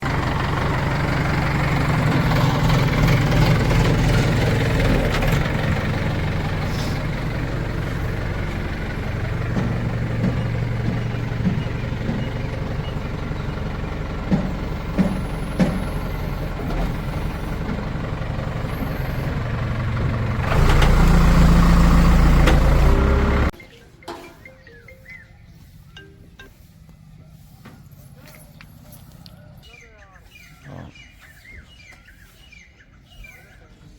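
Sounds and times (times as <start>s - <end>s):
heavy diesel engine running: 0.0s - 23.6s.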